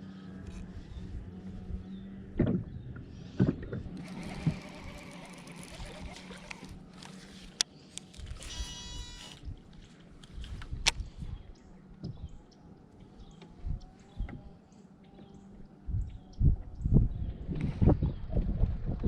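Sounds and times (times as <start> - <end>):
electric trolling motor humming: 0.0 - 9.6
sharp clicks: 3.9 - 6.8
short bleat-like call: 8.4 - 9.4.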